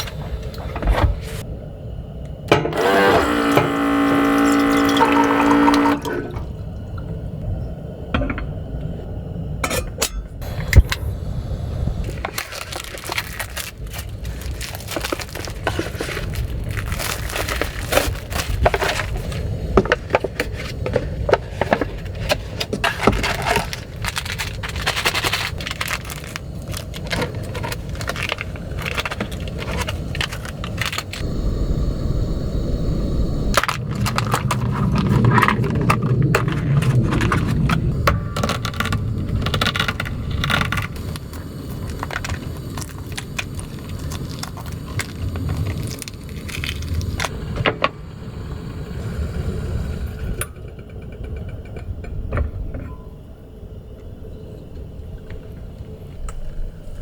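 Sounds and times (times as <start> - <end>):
wind rumbling on microphone: 6.2 - 57.0
things being handled: 12.0 - 31.3, 33.6 - 47.8.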